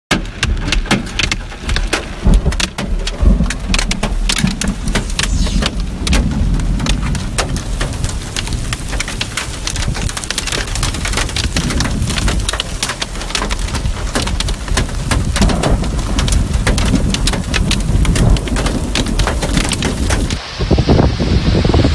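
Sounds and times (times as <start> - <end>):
hailstones cracking on hard surfaces: 0.1 - 5.1, 6.0 - 20.4
heavy rain: 0.2 - 21.9
low rumble: 2.2 - 12.5.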